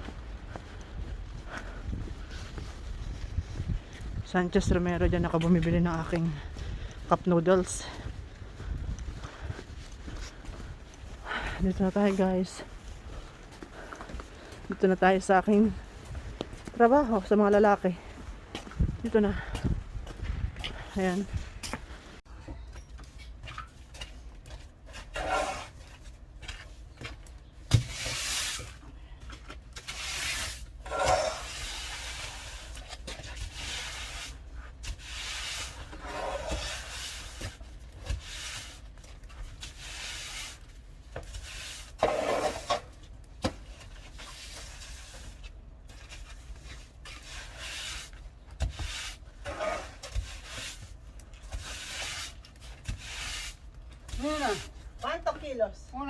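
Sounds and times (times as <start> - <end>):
snow shovel scraping: 29.8 - 32.8, 33.4 - 38.8, 41.3 - 42.9, 47.1 - 54.7.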